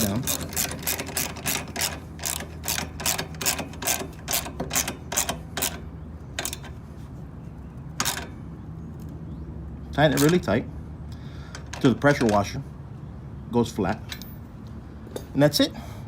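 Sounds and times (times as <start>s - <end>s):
ratchet wrench clicking: 0.0s - 6.8s, 8.0s - 8.3s.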